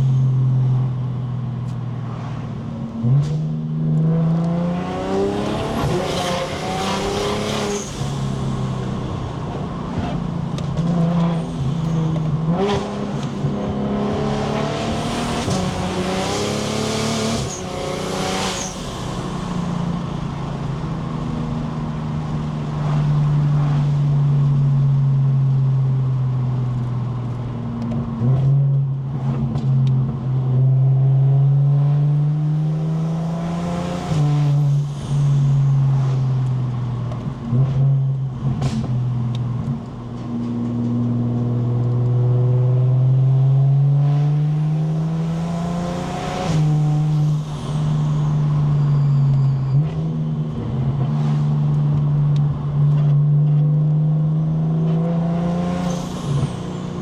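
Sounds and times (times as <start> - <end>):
car engine revving through gears: 0.0 - 57.0
turbo spool whistle: 48.1 - 50.0.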